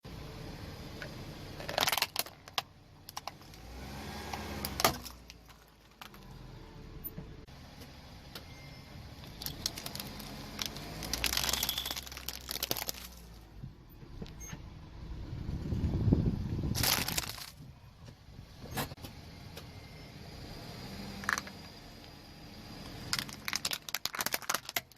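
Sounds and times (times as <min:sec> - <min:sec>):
car engine: 0:00.0 - 0:24.9
tyre crushing plastic toys: 0:01.6 - 0:03.7, 0:04.3 - 0:06.4, 0:09.2 - 0:13.6, 0:16.7 - 0:17.7, 0:23.1 - 0:24.9.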